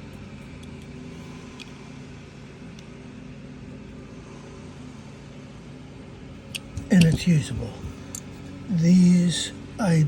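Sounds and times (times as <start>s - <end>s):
low motor hum: 0.0s - 10.0s.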